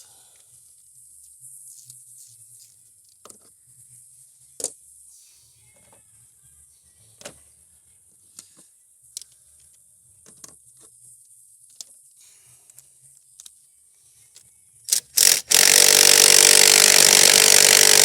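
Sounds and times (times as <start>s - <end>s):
power tool running loudly: 15.2s - 18.0s.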